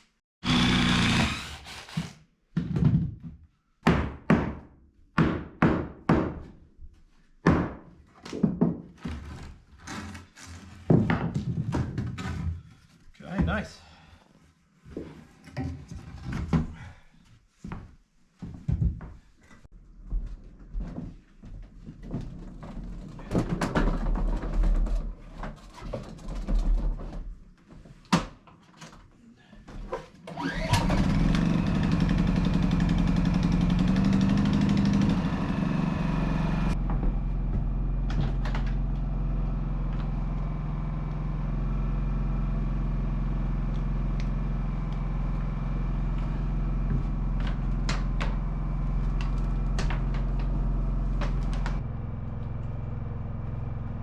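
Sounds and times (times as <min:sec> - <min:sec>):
engine running: 0:30.4 - 0:54.0.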